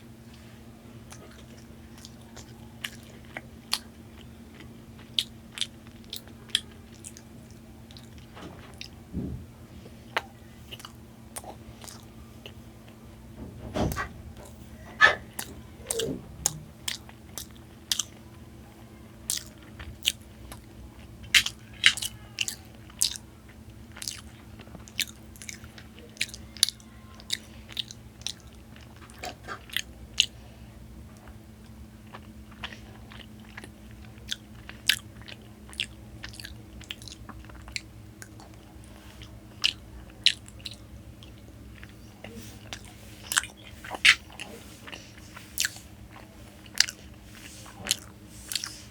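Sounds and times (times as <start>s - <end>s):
chewing: 0.3s - 48.9s
low hum: 7.9s - 19.1s.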